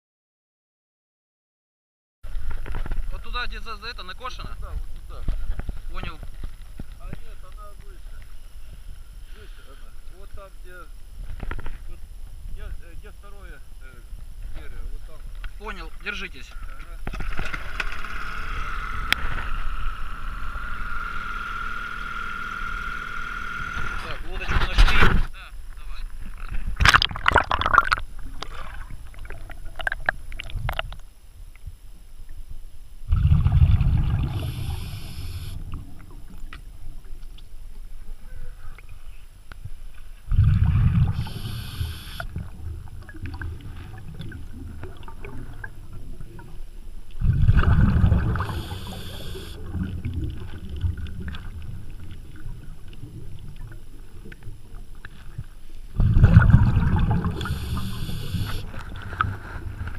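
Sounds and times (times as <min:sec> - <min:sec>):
water and wind noise: 0:02.3 - 0:59.9
oar strokes through water: 0:54.0 - 0:59.9.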